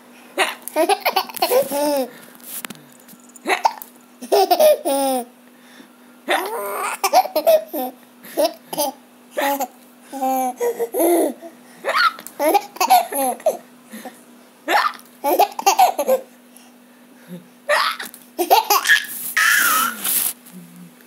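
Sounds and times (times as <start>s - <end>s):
faint steady hum: 0.0s - 21.0s
baby laughing: 0.4s - 2.1s, 3.5s - 5.3s, 6.3s - 13.6s, 14.7s - 16.3s, 17.7s - 20.1s.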